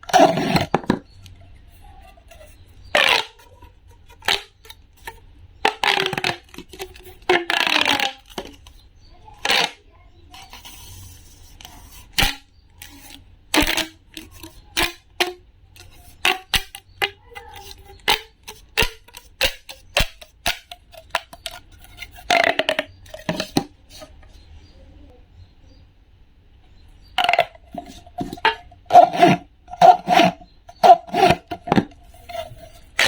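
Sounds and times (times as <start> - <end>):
small hard objects clicking: 10.4 - 23.6.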